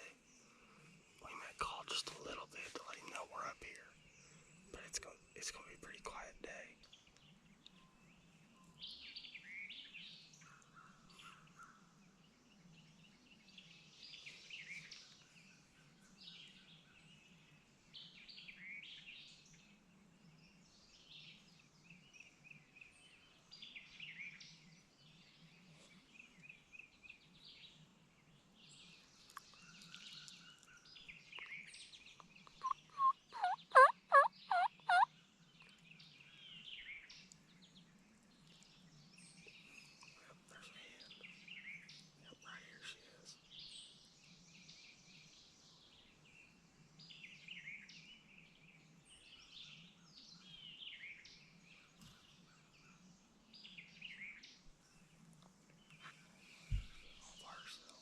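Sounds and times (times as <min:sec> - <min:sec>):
songbirds singing: 0:00.0 - 0:58.0
turkey yelps: 0:32.6 - 0:35.1.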